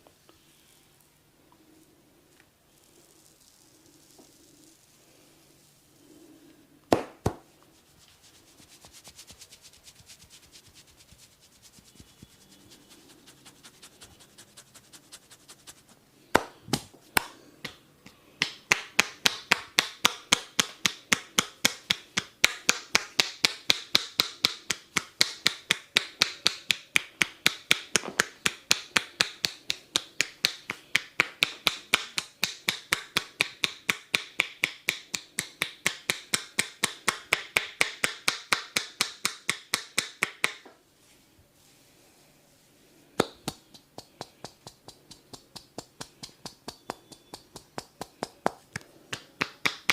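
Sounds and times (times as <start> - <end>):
hands slapping skin: 6.9 - 7.4, 8.6 - 40.6, 43.2 - 49.9.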